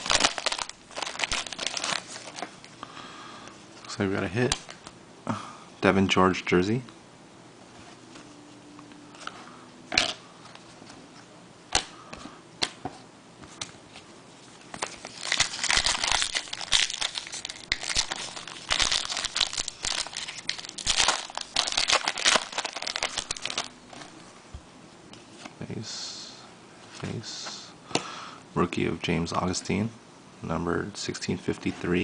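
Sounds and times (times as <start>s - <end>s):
card pack wrapper tearing: 0.0s - 2.5s, 14.8s - 23.7s.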